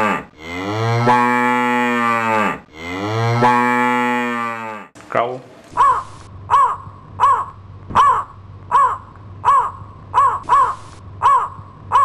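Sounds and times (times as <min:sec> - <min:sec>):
girl imitating crow caws: 0:05.8 - 0:12.0.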